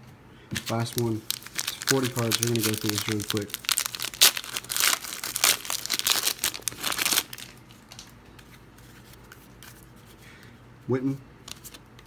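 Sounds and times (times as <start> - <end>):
plastic wrapper tearing and crinkling: 0.6 - 8.1.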